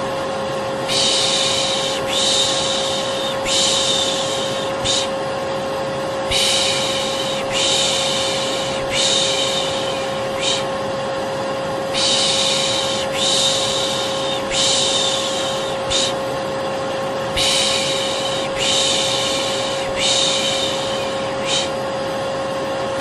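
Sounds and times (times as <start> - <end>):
vacuum cleaner running: 0.0 - 23.0
person shushing: 0.8 - 5.2, 6.3 - 10.8, 11.9 - 16.2, 17.3 - 21.8.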